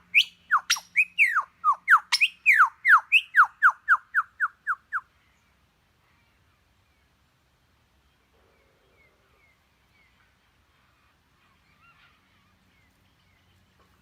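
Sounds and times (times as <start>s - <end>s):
bird chirps: 0.0s - 6.4s
bird whistle: 0.1s - 5.0s.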